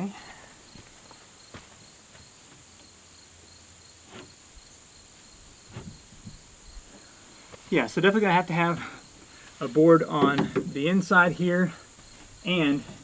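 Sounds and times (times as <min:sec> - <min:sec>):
crickets chirring: 0:00.0 - 0:13.0
faint knocks: 0:10.1 - 0:10.9.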